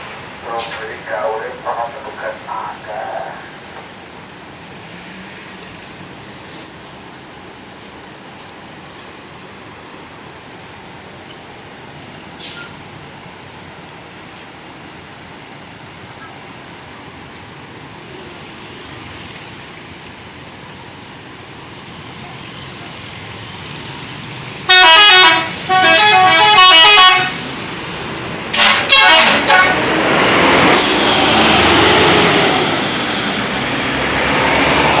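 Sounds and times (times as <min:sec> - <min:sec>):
loud hissing rush: 0:00.0 - 0:05.5, 0:06.2 - 0:07.0, 0:29.5 - 0:35.0
musical bus horn: 0:24.7 - 0:27.4, 0:28.5 - 0:30.0.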